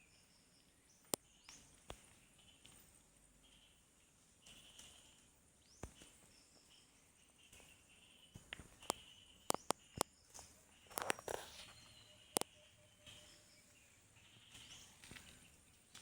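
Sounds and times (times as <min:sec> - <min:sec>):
faint bird chirps: 0:00.0 - 0:16.0
sharp clicks: 0:08.5 - 0:10.1.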